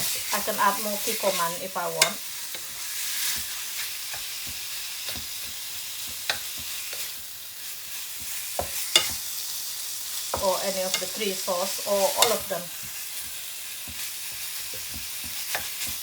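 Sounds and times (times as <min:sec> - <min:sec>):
meat sizzling in frying pan: 0:00.0 - 0:16.0
utensil tapping pan: 0:01.1 - 0:07.2, 0:07.9 - 0:09.4, 0:10.2 - 0:16.0.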